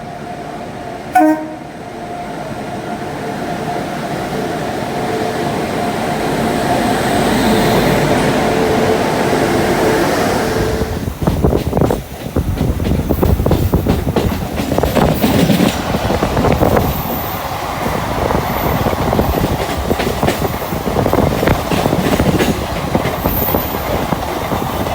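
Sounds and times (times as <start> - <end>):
electric train passing: 0.0 - 24.9
train horn blast: 1.1 - 2.0
wheels clicking over rail joints: 11.1 - 24.9.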